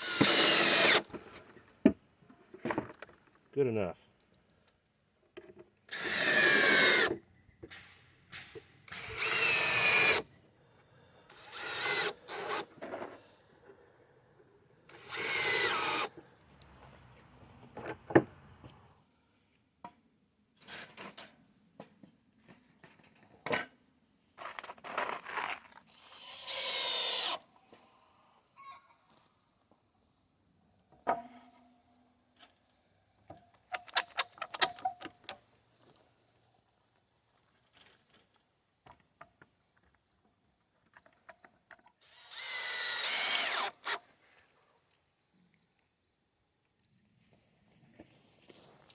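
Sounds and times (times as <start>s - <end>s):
power tool bursts: 0.0s - 1.1s, 5.9s - 7.2s, 8.9s - 10.2s, 42.0s - 44.0s
boards and tools knocking: 31.0s - 31.6s.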